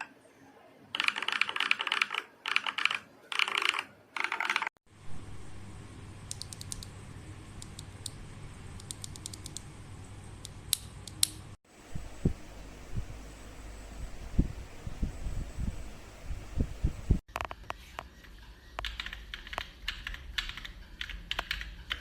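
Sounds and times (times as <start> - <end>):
low hum: 4.9 - 10.6, 11.7 - 17.2.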